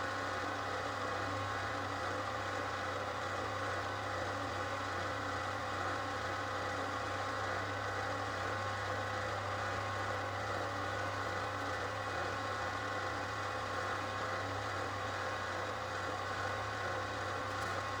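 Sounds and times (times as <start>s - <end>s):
paper processor motor hum: 13.5s - 18.0s.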